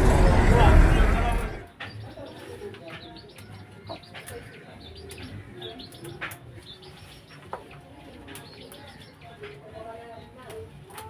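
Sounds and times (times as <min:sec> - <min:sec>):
birds chirping: 0:00.0 - 0:01.6
low steady hum: 0:00.0 - 0:01.6.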